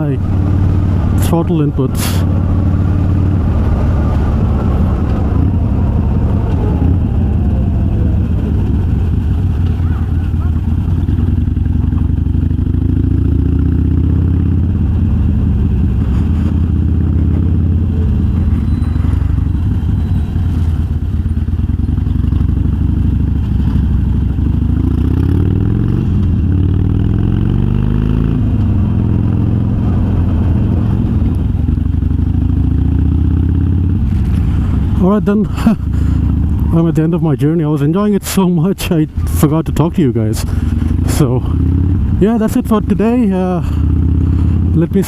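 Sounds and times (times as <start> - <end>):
motorcycle engine accelerating: 0.0 - 45.0.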